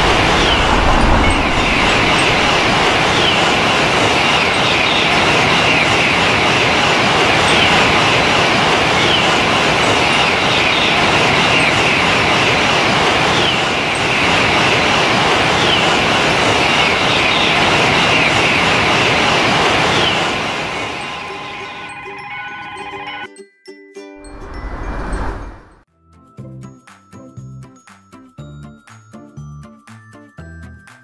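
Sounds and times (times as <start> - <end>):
train wheels rolling on rails: 0.0 - 23.1.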